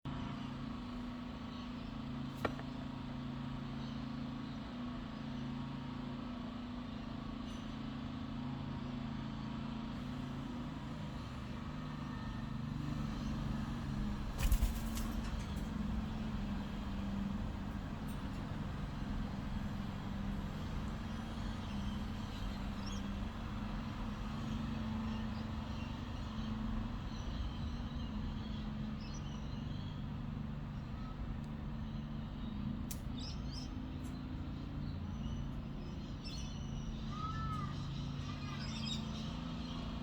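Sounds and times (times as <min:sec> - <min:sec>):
low mechanical hum: 0:00.1 - 0:40.0.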